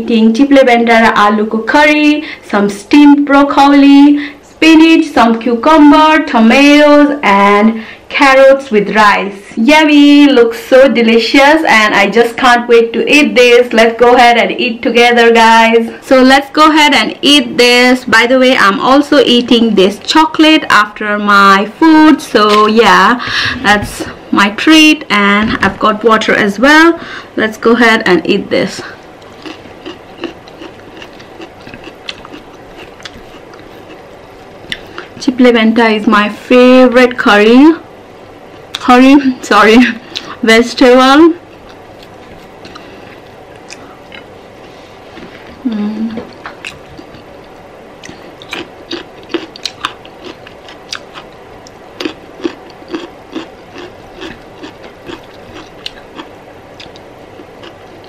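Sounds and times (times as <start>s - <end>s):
low background hum: 0.0s - 58.0s
quiet chewing: 29.2s - 35.2s, 41.5s - 58.0s.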